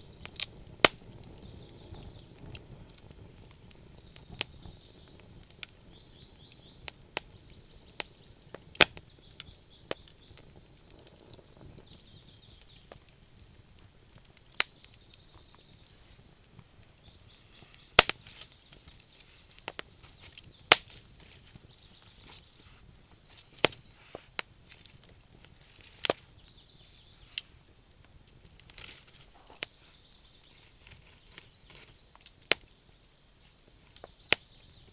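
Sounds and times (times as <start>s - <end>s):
wood fire crackling: 0.0s - 34.9s
faint high chirping: 4.0s - 10.5s, 25.7s - 27.9s, 29.2s - 34.9s.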